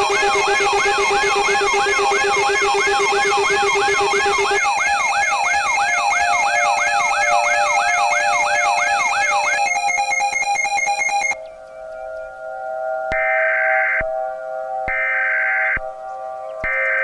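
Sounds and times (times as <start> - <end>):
pulsed alarm beeps: 0.0 - 11.4
rapid stutter of beeps: 0.0 - 11.4
rising and falling alarm whoop: 0.0 - 11.4.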